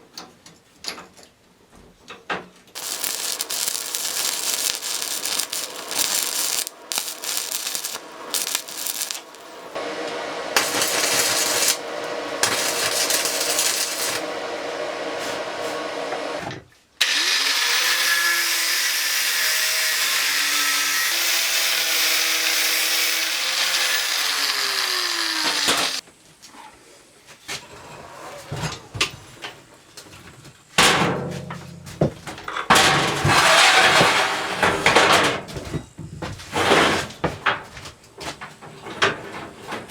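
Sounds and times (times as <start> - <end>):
power tool machine noise: 2.8 - 18.6, 20.0 - 26.0.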